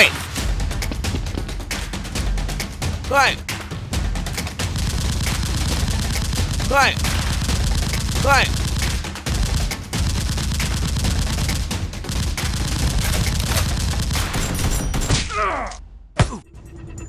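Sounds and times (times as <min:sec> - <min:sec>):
rapid automatic gunfire: 0:04.3 - 0:15.1
sharp crack: 0:04.7 - 0:15.4.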